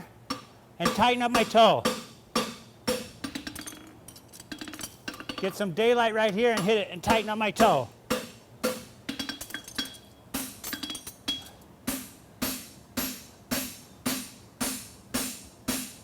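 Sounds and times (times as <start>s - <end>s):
hammer striking horseshoe on anvil: 0.3s - 5.6s, 6.3s - 16.0s.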